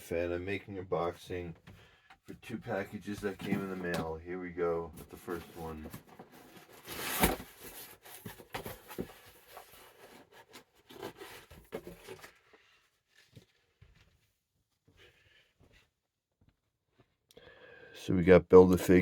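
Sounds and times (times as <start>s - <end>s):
packaging rustling and tearing: 5.7s - 12.4s.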